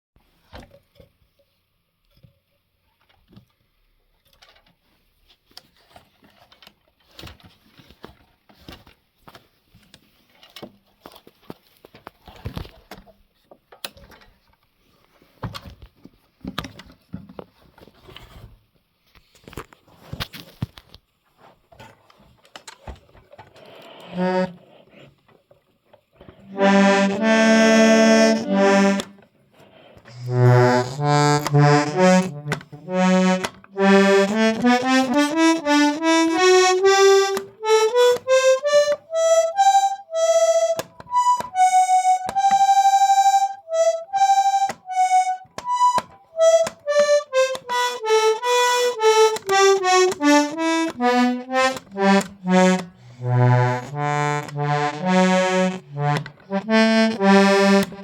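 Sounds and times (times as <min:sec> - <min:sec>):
button accordion playing: 0:24.1 - 0:24.6, 0:26.5 - 0:29.2, 0:30.1 - 0:58.0.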